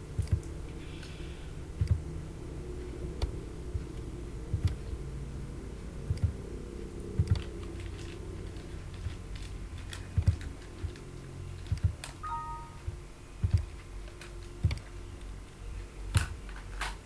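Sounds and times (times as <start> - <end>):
low hum: 0.0 - 16.8
two-note electronic tone: 12.2 - 13.0.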